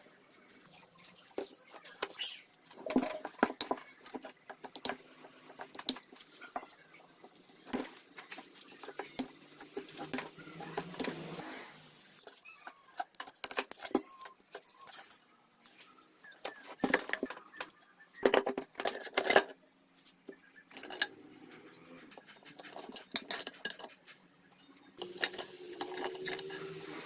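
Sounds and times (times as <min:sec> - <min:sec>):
metal tools clinking: 0:12.2 - 0:15.2.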